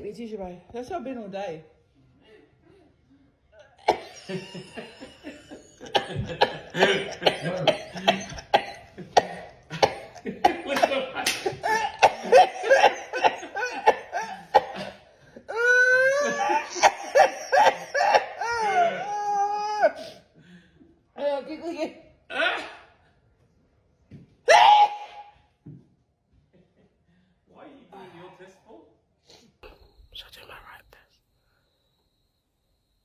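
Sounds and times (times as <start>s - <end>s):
people coughing: 3.6s - 19.2s
people laughing: 4.0s - 19.5s
high-pitched laughing cries: 15.5s - 20.0s.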